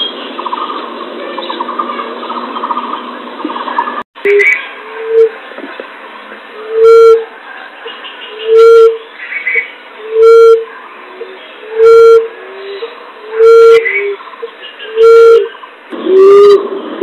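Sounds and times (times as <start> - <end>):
birds chirping: 0.0 - 17.0
dove hooting: 10.0 - 17.0.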